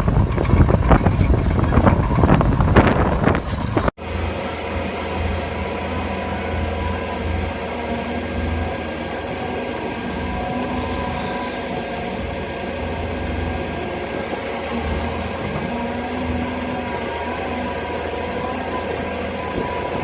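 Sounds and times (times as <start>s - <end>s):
excavator diesel engine running: 0.0s - 20.0s.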